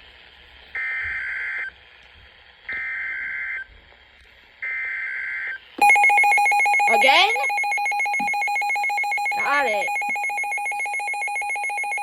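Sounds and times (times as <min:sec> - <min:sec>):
digital data tone bursts: 0:05.8 - 0:12.0.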